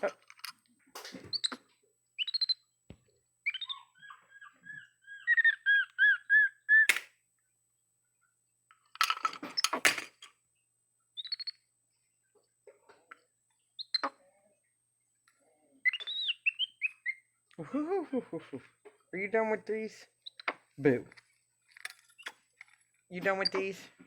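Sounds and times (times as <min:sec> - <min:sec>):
monkey chirping: 0:01.3 - 0:02.6, 0:03.4 - 0:07.0, 0:11.2 - 0:11.7, 0:13.8 - 0:14.2, 0:15.8 - 0:17.3, 0:23.2 - 0:23.9.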